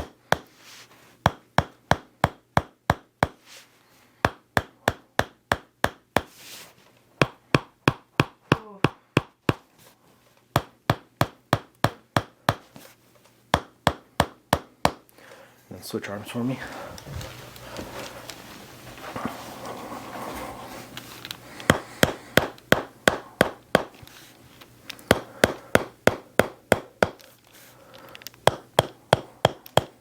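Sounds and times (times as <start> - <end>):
wooden mallet tapping chisel: 21.6 - 24.0, 25.0 - 27.2, 28.4 - 30.0.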